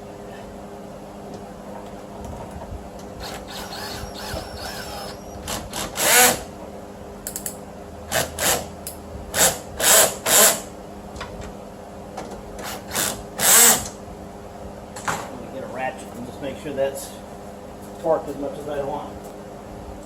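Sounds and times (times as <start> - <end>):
cordless drill bursts: 3.2 - 6.5, 8.1 - 8.7, 9.4 - 10.7, 12.6 - 13.9.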